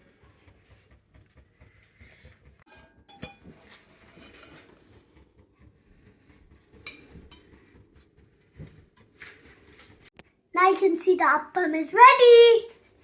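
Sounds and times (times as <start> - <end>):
cookware clinking metal on metal: 2.7 - 4.8.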